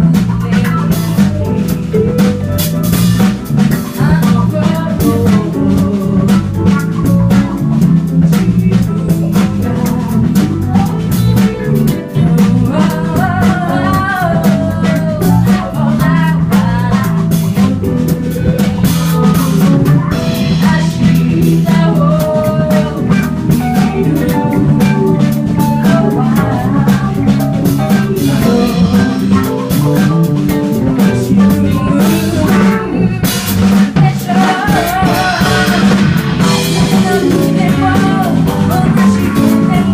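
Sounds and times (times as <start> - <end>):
bass: 0.0 - 39.9
drum kit beat: 0.0 - 39.9
guitar: 0.0 - 39.9.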